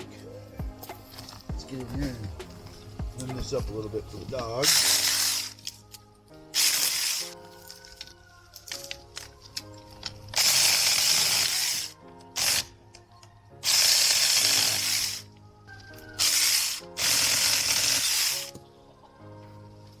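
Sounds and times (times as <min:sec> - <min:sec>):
background music: 0:00.0 - 0:20.0
electric chainsaw cutting branches: 0:04.6 - 0:05.6, 0:06.6 - 0:07.4, 0:10.3 - 0:12.7, 0:13.6 - 0:15.3, 0:16.2 - 0:18.6.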